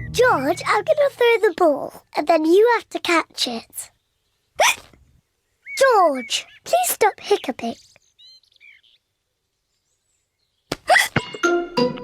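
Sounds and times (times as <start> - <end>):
short held musical notes: 0.0 - 0.9
cartoon piglet squeaky hiccup: 4.6 - 4.9.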